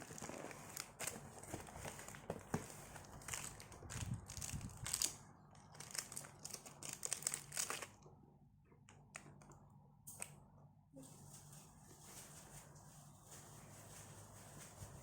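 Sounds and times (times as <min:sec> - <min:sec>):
packaging crinkling: 0:00.0 - 0:08.0.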